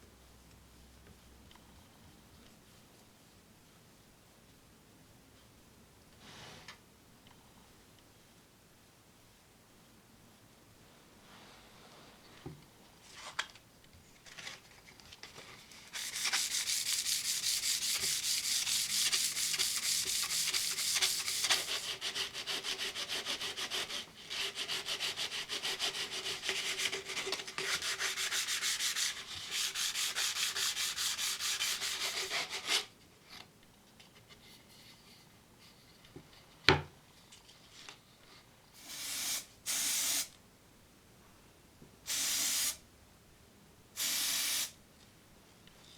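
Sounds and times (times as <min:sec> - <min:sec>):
sandpaper rubbing on a surface: 0:16.0 - 0:32.9.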